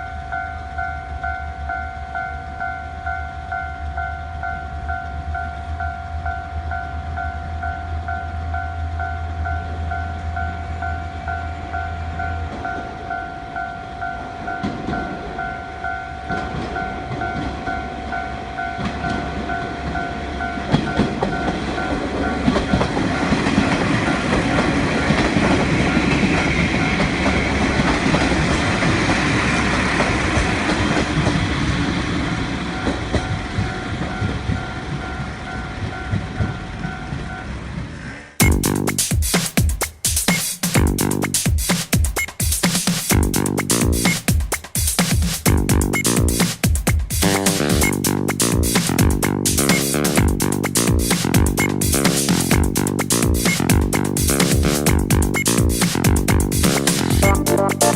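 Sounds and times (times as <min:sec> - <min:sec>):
level-crossing warning bell ringing: 0:00.0 - 0:27.6, 0:32.6 - 0:37.7
train wheels clacking over rail joints: 0:20.7 - 0:31.8
electronic music: 0:38.4 - 0:57.9.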